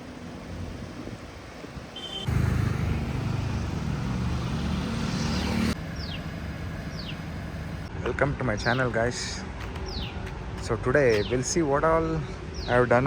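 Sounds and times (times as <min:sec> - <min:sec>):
car engine running: 0:02.0 - 0:07.9.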